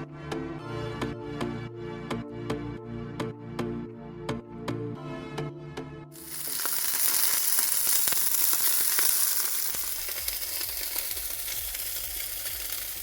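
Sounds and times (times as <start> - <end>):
burgers sizzling and crackling: 6.2 - 13.0.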